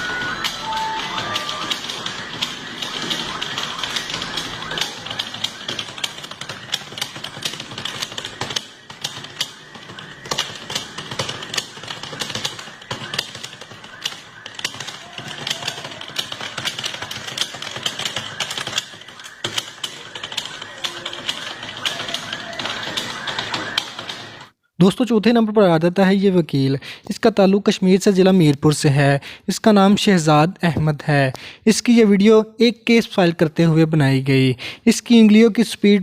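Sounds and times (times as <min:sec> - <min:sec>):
fast keyboard typing: 0:00.0 - 0:24.6.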